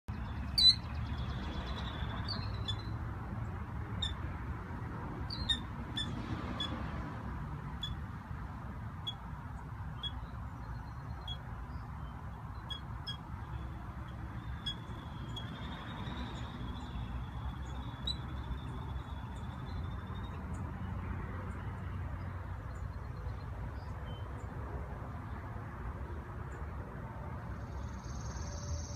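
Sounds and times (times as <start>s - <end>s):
young bird peeping: 5.3s - 6.8s, 12.0s - 20.3s.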